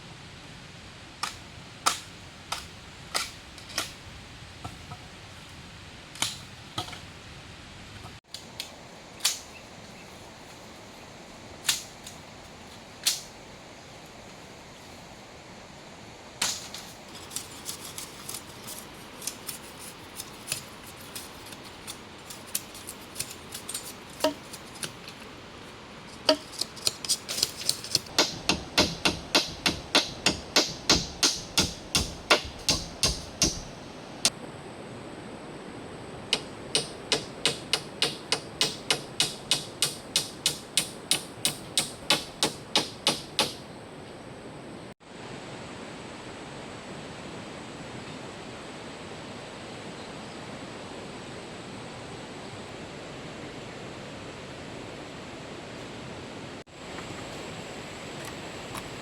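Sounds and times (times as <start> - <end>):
steady hiss: 0.0 - 59.0
hand tool striking wood: 21.6 - 25.0, 26.1 - 33.9, 36.4 - 43.6.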